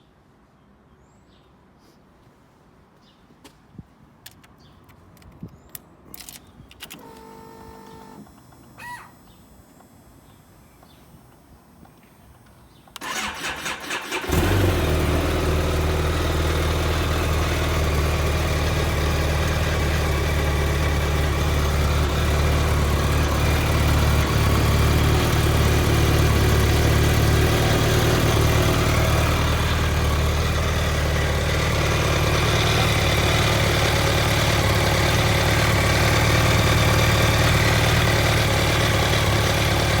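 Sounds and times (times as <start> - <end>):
motorcycle starter cranking: 12.8 - 16.0
motorcycle engine idling: 14.1 - 40.0.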